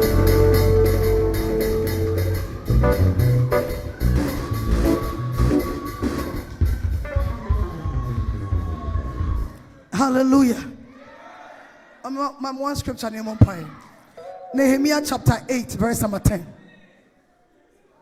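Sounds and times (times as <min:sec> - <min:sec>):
electric guitar: 0:00.0 - 0:08.3
bass guitar: 0:00.0 - 0:09.5
drum kit beat: 0:00.0 - 0:09.6.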